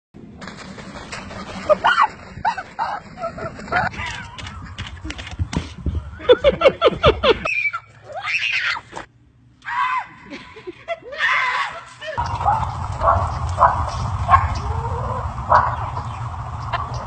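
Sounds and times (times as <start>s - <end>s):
birds squawking and shrieking: 7.5s - 8.9s, 12.2s - 17.0s.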